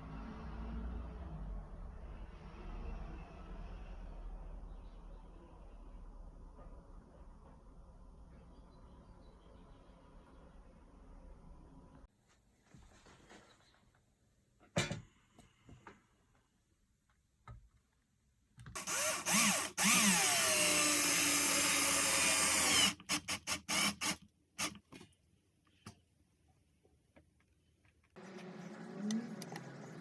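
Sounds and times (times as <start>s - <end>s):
power drill running: 18.8s - 24.8s.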